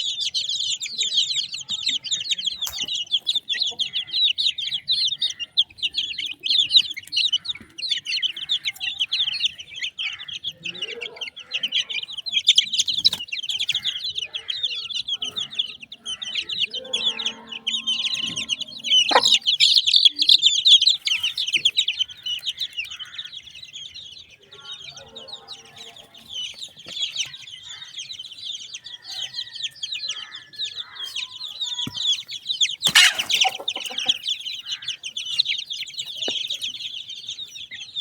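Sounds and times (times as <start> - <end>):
chicks peeping: 0.0 - 38.0
hen clucking: 0.0 - 38.0.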